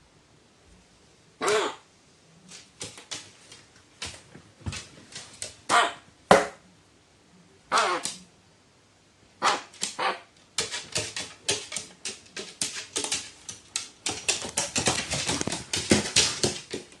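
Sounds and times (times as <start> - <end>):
dogs barking: 1.4 - 1.8, 5.7 - 6.1, 7.7 - 8.1, 9.4 - 10.3.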